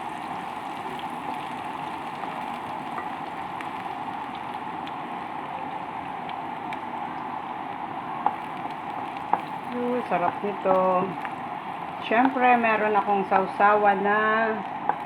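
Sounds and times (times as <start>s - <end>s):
meat and garlic sizzling in a pan: 0.0s - 15.0s
faint pops of browning garlic: 0.8s - 5.0s, 8.2s - 12.4s.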